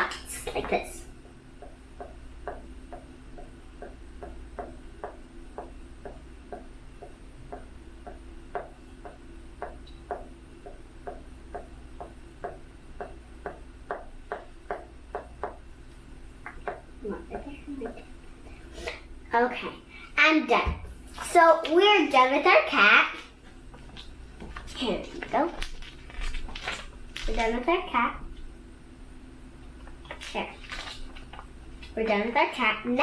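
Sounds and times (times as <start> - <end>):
marker tapping on paper: 1.6 - 15.6, 16.5 - 16.9.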